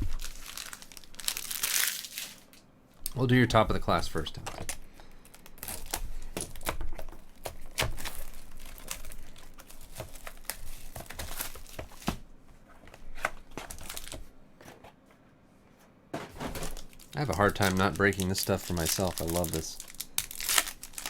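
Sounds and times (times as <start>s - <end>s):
wrapper crinkling and tearing: 0.0s - 2.6s, 4.7s - 12.2s, 13.6s - 14.2s, 16.4s - 21.0s.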